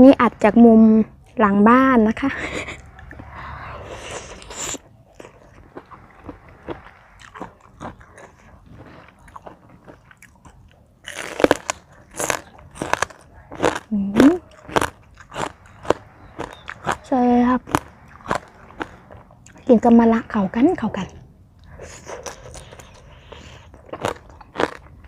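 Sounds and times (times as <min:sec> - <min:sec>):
wet chewing: 0:02.4 - 0:19.9, 0:21.6 - 0:25.0
crisp crunching bites: 0:04.4 - 0:17.0, 0:23.7 - 0:24.9.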